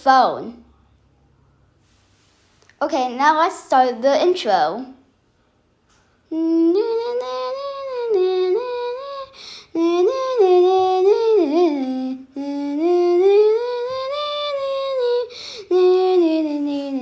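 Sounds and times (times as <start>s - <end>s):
high voice singing wordless tune: 6.3s - 17.0s.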